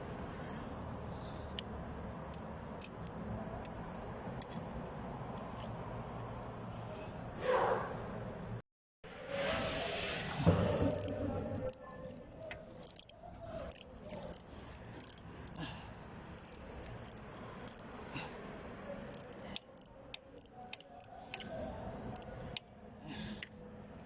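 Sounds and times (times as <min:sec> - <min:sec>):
hand tools clicking on bolts: 0:10.9 - 0:11.1, 0:12.8 - 0:15.7, 0:16.3 - 0:17.8, 0:19.1 - 0:21.5.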